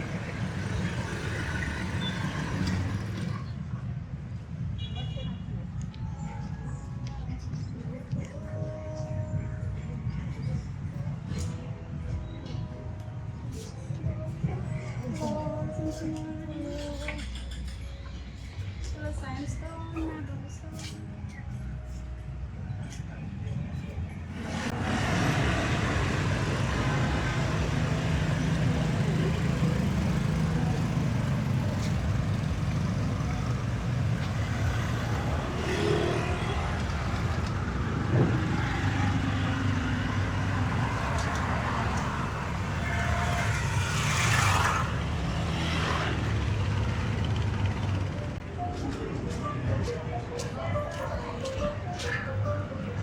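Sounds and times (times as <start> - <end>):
vehicle engine and road noise: 0.0 - 53.0.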